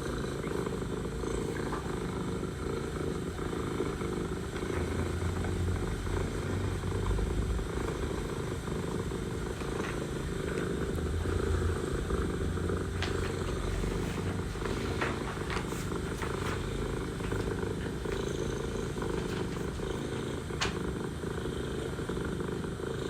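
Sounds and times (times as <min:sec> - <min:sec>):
cat purring: 0:00.0 - 0:23.0.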